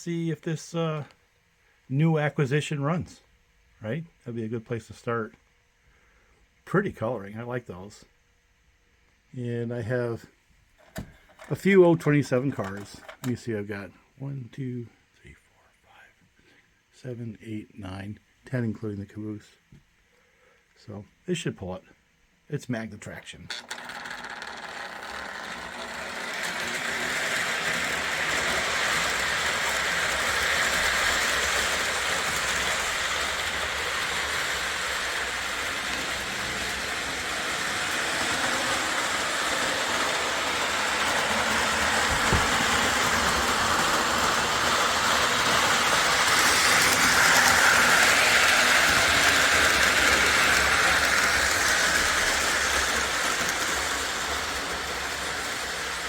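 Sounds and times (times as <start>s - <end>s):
model train motor whir: 23.6s - 56.0s
wheels rumbling on rails: 25.2s - 56.0s.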